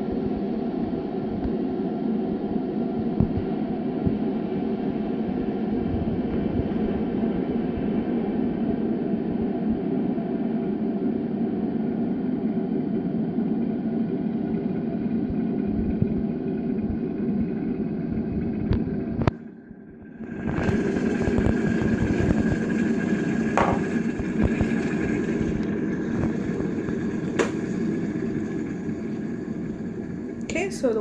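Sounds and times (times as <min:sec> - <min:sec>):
electric kettle boiling water: 0:00.0 - 0:31.0.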